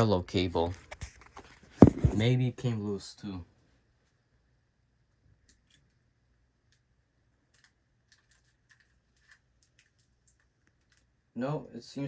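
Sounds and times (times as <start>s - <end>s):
small clicks and taps of wiring: 5.4s - 6.0s, 7.5s - 11.1s.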